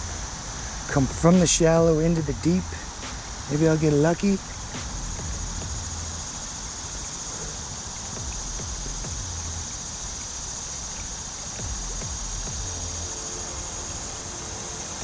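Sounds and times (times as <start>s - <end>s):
insects droning: 0.0s - 15.0s
low rumble: 4.6s - 6.5s, 8.2s - 9.9s, 11.6s - 13.9s.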